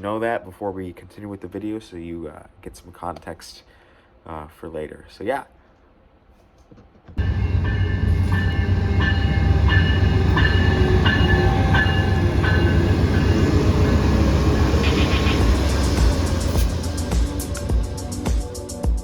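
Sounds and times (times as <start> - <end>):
train rumbling: 7.0 - 18.8.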